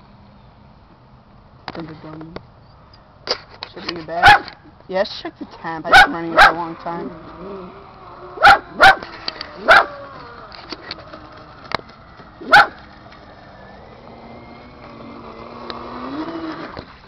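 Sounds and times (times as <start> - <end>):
dog barking: 4.2 - 4.5, 5.9 - 6.6, 8.4 - 9.0, 9.6 - 10.0, 12.4 - 12.8
electric motor humming: 6.1 - 17.0.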